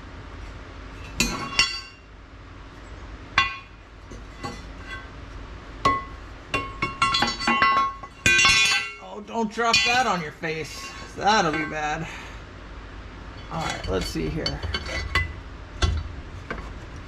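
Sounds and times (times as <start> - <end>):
metal hardware clinking: 1.0 - 2.0, 5.8 - 12.0.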